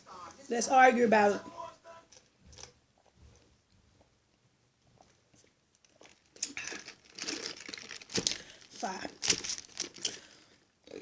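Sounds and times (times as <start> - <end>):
person chewing food: 2.2 - 11.0.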